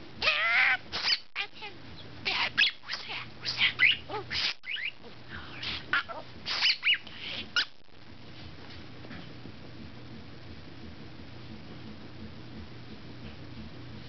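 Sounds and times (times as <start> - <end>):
budgerigar chattering: 0.2 - 5.0, 5.6 - 7.8.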